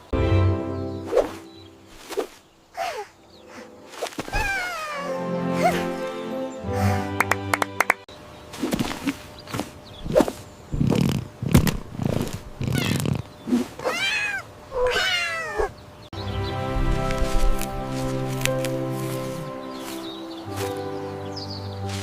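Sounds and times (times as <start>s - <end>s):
cat mewing and meowing: 12.6s - 13.1s, 13.8s - 15.7s.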